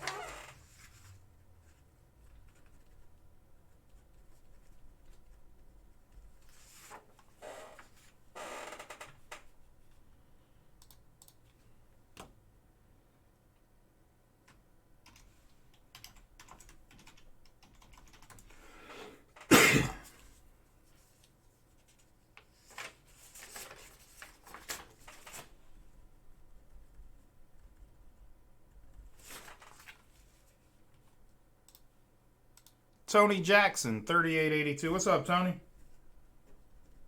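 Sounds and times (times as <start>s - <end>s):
keyboard typing and clicks: 10.8s - 11.6s, 14.4s - 18.5s, 32.6s - 32.8s.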